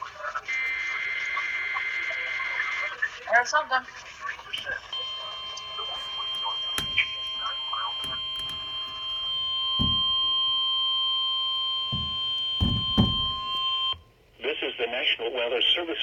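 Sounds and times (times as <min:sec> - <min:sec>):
steady alarm tone: 0:04.9 - 0:14.1
low thumps: 0:08.0 - 0:10.5, 0:11.9 - 0:13.7.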